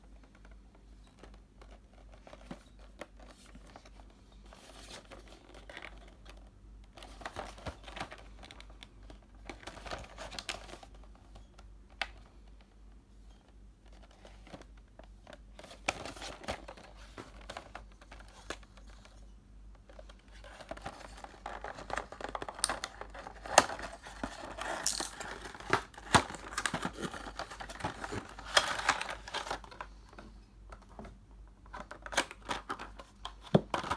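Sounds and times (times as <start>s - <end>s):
plastic wrapping crinkling and tearing: 20.4s - 29.9s.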